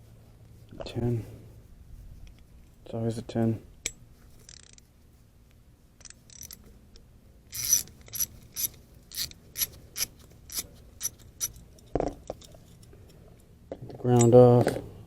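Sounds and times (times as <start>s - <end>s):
socket ratchet clicking: 3.9s - 4.8s, 6.0s - 6.6s, 7.5s - 11.6s.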